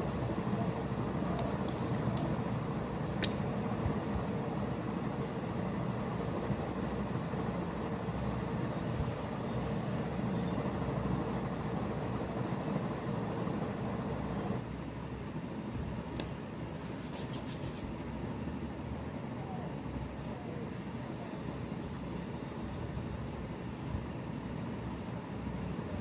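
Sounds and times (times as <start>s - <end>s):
fingers rubbing hair: 16.8s - 18.0s.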